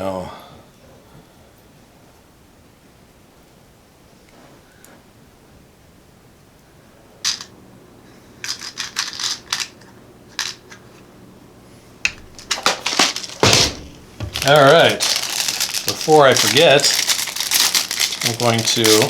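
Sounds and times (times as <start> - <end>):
computer parts clicking and clattering: 7.3 - 7.5, 12.1 - 19.0.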